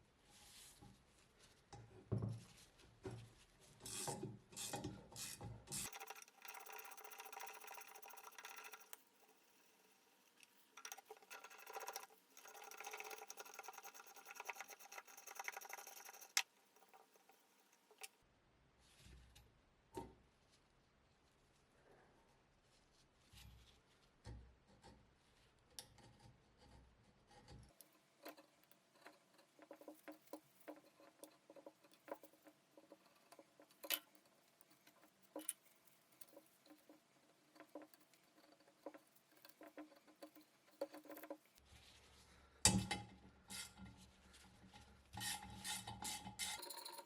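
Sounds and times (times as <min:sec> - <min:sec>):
tools and metal parts clicking: 0:05.8 - 0:09.4.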